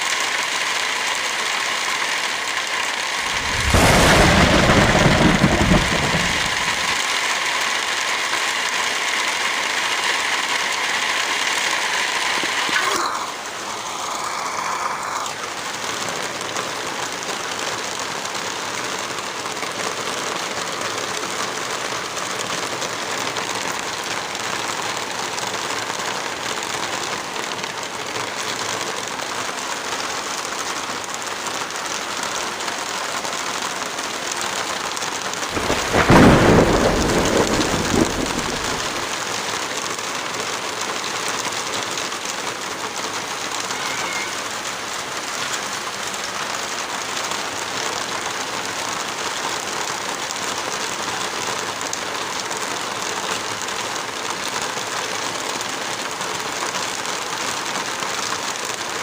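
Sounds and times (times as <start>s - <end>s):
heavy rain falling: 0.0s - 59.0s
thunder crack and rumble: 3.2s - 7.2s, 35.5s - 39.3s.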